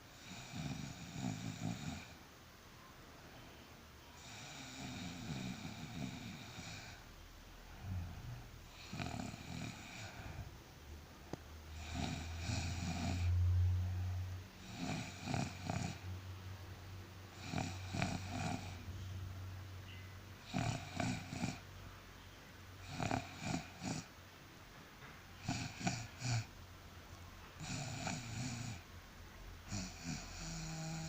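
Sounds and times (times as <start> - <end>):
person snoring: 0.2 - 2.2, 4.2 - 7.0, 7.7 - 10.5, 11.7 - 13.5, 14.6 - 16.0, 17.3 - 18.8, 20.4 - 21.6, 22.8 - 24.1, 25.4 - 26.5, 27.6 - 28.8, 29.7 - 31.0
low steady hum: 2.1 - 4.2, 5.1 - 27.6.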